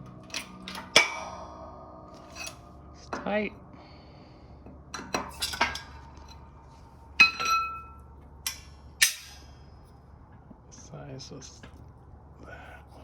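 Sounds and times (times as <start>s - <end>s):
metal tools clinking: 0.1s - 1.2s, 2.1s - 2.7s, 4.9s - 6.4s, 7.2s - 9.6s.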